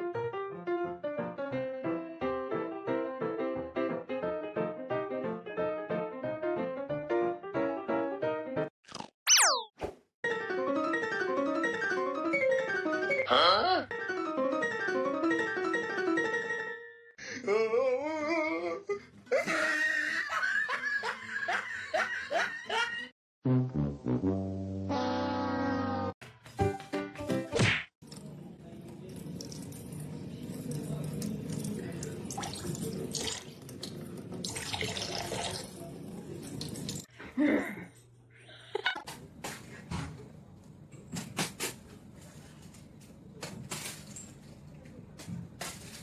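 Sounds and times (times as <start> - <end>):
person laughing: 18.0 - 23.1
water running from a tap: 28.1 - 37.1.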